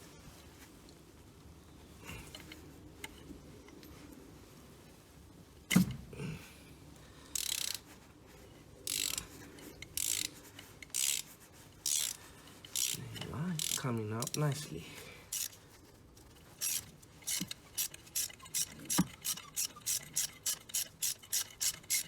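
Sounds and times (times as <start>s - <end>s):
ratchet wrench clicking: 7.4s - 7.8s, 8.8s - 9.3s, 9.9s - 14.5s, 15.3s - 15.6s, 16.6s - 22.0s.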